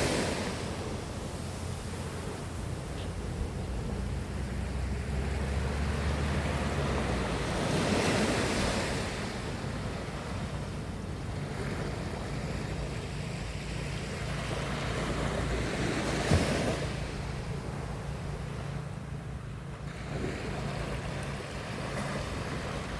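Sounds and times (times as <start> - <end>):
ocean waves washing ashore: 0.0 - 22.9.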